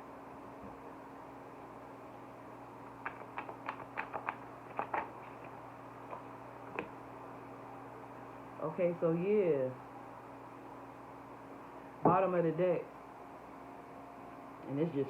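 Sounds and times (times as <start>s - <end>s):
steady low hum: 0.0s - 15.0s
cards clicking and snapping: 2.9s - 6.9s.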